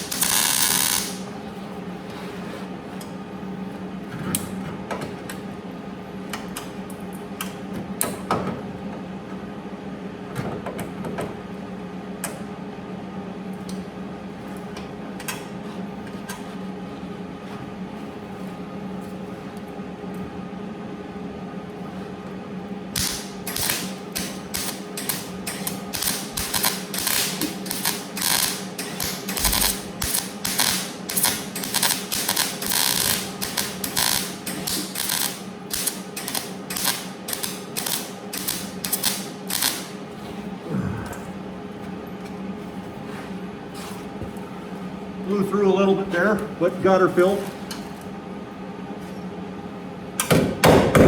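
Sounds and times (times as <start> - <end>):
welder crackling bursts: 0.0 - 1.2, 23.0 - 40.0
steady hum: 0.0 - 51.0.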